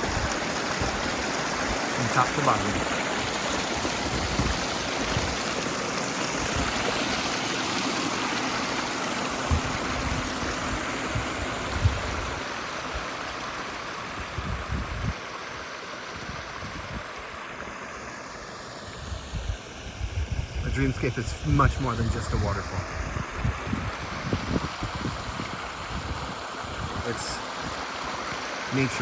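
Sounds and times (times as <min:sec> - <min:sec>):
water cascading over rocks: 0:00.0 - 0:20.0, 0:20.6 - 0:29.0
short low thumps: 0:09.4 - 0:10.3.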